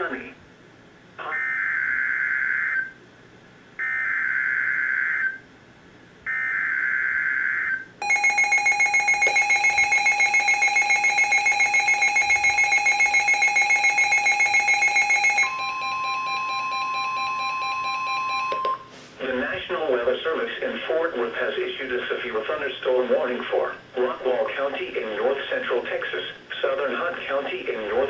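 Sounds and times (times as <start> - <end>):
screeching data tones: 6.3 - 18.6
pulsing electronic attention tone: 8.0 - 18.6.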